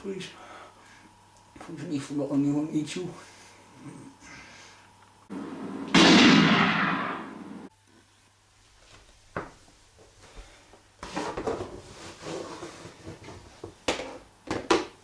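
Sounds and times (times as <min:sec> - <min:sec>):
rustling and scraping: 0:11.0 - 0:13.7.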